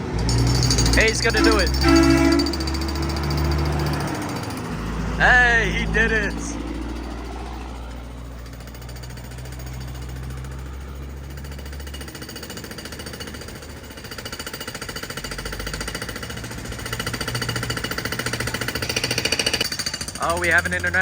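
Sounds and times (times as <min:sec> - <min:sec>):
diesel truck engine passing: 0:00.0 - 0:13.9.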